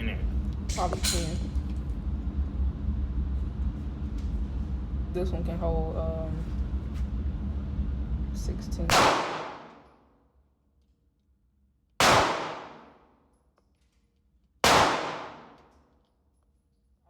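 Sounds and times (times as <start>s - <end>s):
gunshots echoing: 8.9s - 9.8s, 12.0s - 13.0s, 14.6s - 15.6s.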